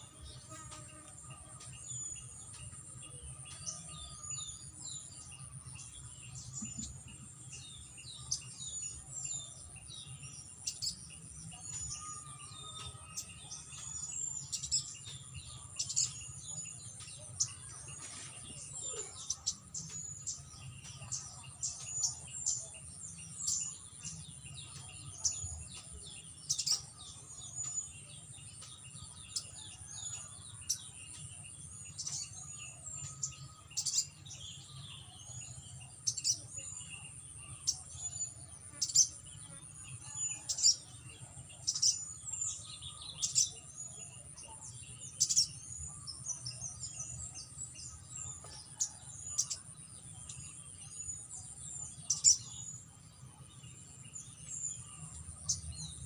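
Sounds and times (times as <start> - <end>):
bird chirping: 0.0 - 56.0.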